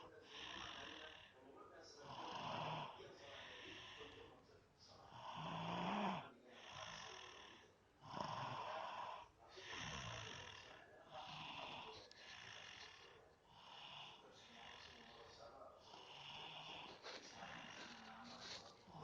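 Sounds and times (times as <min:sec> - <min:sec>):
person snoring: 0:02.1 - 0:04.2, 0:05.1 - 0:19.0.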